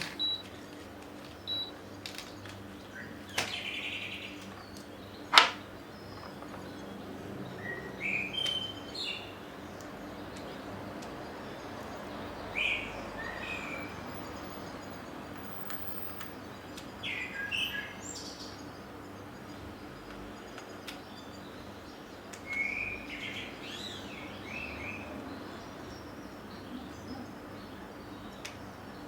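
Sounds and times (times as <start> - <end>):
low background hum: 0.0 - 29.0.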